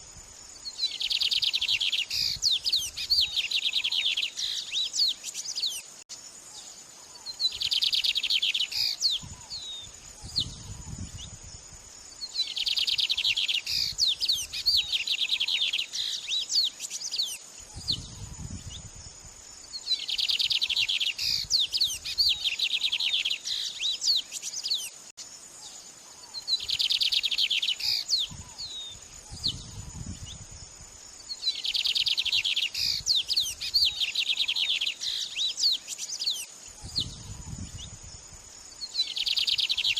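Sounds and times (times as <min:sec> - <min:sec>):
bird chirps: 0:00.6 - 0:11.4, 0:12.2 - 0:18.9, 0:19.7 - 0:30.4, 0:31.2 - 0:38.0, 0:38.7 - 0:39.9
songbird trilling: 0:00.7 - 0:05.8, 0:07.1 - 0:11.0, 0:12.3 - 0:18.9, 0:19.8 - 0:24.9, 0:26.2 - 0:30.4, 0:31.3 - 0:38.0, 0:38.8 - 0:39.9.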